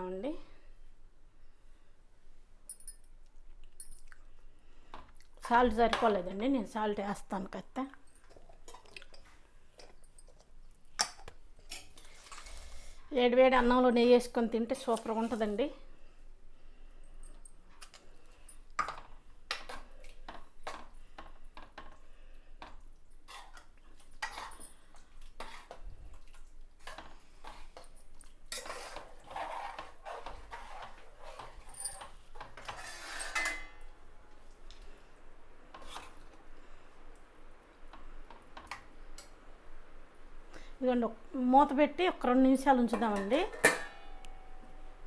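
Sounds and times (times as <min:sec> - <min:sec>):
spoon stirring in cooking pot: 0:18.8 - 0:33.8.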